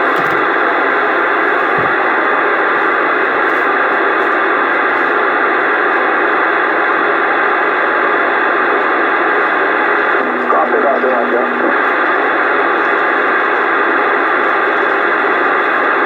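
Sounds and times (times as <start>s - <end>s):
faint steady tones: 9.6s - 14.3s
radio static hiss: 10.0s - 13.0s.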